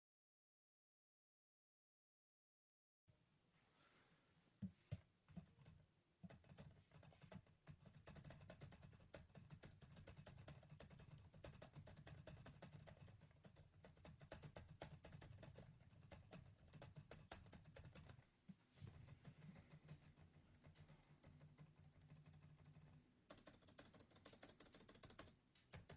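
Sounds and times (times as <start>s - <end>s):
fast typing on laptop keyboard: 5.3s - 18.2s, 18.9s - 25.9s.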